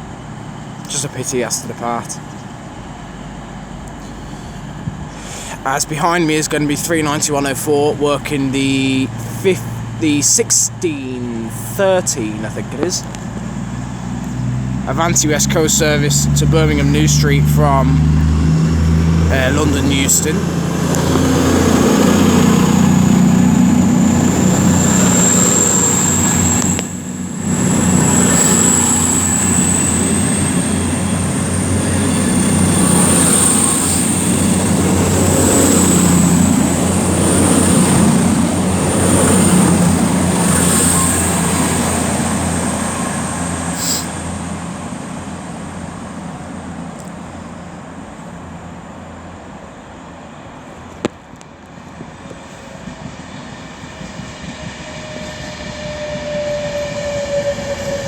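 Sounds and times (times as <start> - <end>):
approaching train whine: 0.0 - 58.0
diesel train engines droning: 0.0 - 58.0
high whistle: 22.1 - 44.6, 54.8 - 58.0.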